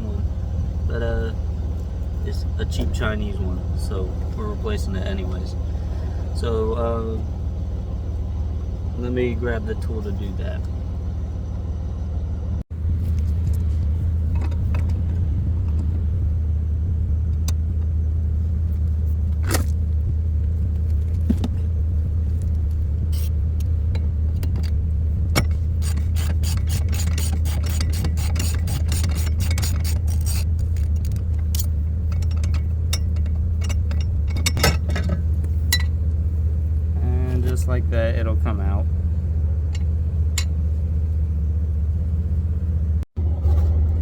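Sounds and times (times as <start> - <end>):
steady low hum: 0.0 - 44.0
ratchet clicking: 25.8 - 34.6.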